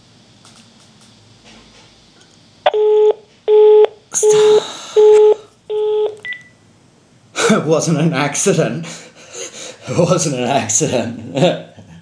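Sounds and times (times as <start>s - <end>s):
high beep: 2.7s - 6.5s.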